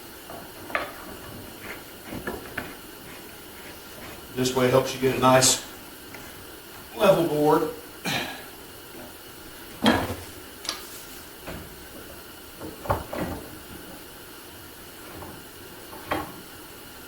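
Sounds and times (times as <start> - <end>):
hand plane scraping wood: 1.0 - 4.8.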